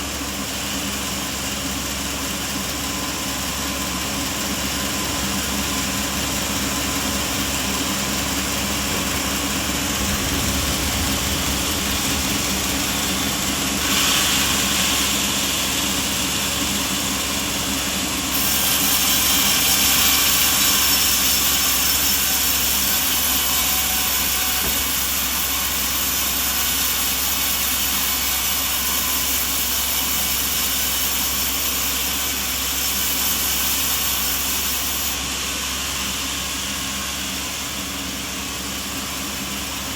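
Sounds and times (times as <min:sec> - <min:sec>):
sawmill machinery humming: 0:00.0 - 0:39.9
loud hiss: 0:04.7 - 0:39.2.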